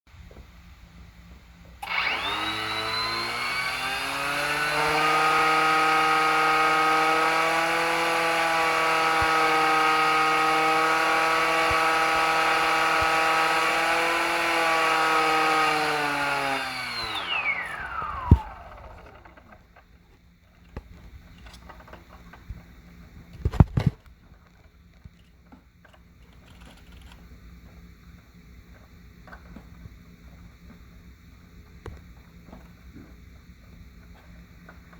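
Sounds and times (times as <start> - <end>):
motor whining with rough rasp: 1.8 - 19.9.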